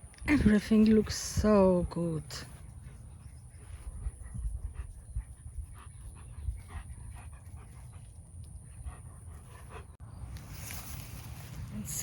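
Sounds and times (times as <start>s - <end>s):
dog panting: 2.5s - 10.0s.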